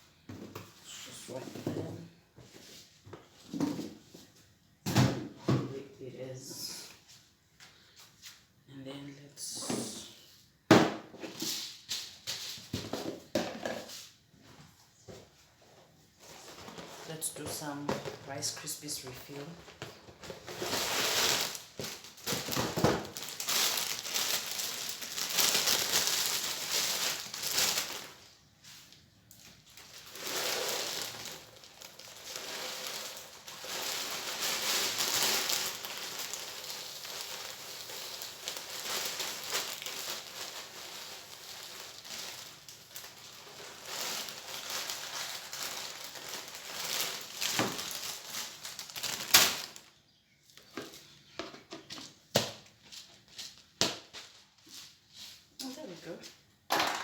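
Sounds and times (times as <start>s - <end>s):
dry cereal pattering: 18.4s - 49.8s
bag crinkling: 20.3s - 28.4s, 29.3s - 49.9s.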